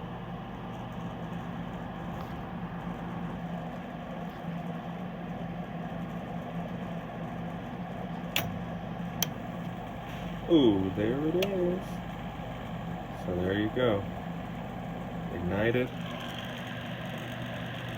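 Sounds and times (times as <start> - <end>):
furnace motor humming: 0.0 - 17.9
sharp click: 8.3 - 8.6.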